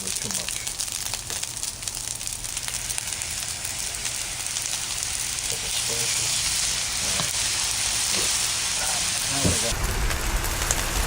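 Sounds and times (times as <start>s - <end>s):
rice sizzling on a griddle: 0.0s - 11.0s.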